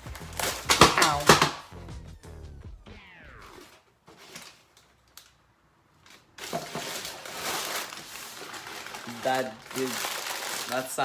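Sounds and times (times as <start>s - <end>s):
short falling tone: 1.7s - 3.8s
paper crinkling and tearing: 6.0s - 11.0s.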